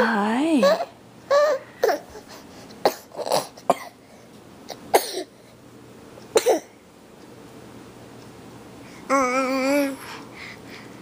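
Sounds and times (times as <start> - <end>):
infant harsh breathing noises: 1.4 - 4.3, 8.8 - 11.0.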